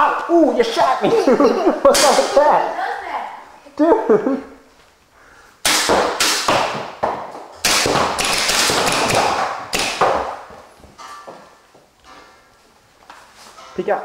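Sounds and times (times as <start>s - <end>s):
paintballs striking: 5.6s - 10.6s
paintball markers firing: 5.7s - 6.9s, 7.6s - 10.4s.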